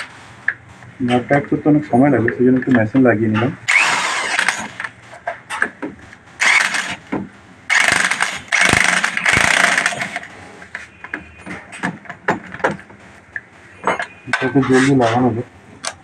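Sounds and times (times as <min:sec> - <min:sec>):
power wrench bursts: 0:03.7 - 0:04.9, 0:06.4 - 0:07.0, 0:07.7 - 0:10.2.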